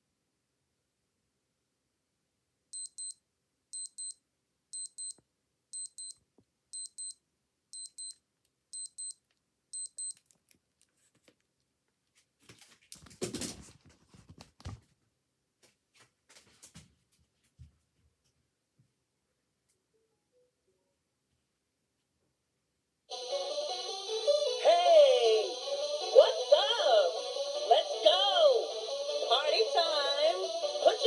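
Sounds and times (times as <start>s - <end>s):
digital watch alarm beeping: 2.8s - 3.2s, 3.8s - 4.2s, 4.8s - 5.2s, 5.8s - 6.2s, 6.8s - 7.2s, 7.8s - 8.2s, 8.8s - 9.2s, 9.8s - 10.2s
rustling noise: 12.0s - 18.4s.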